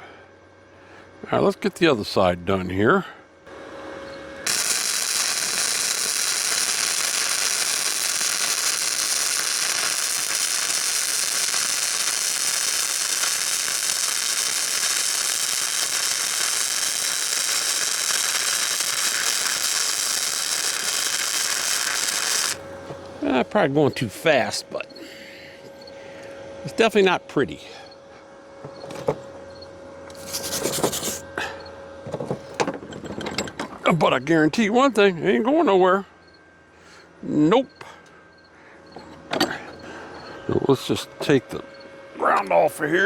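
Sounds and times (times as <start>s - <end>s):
welder arc crackling: 4.4s - 22.6s.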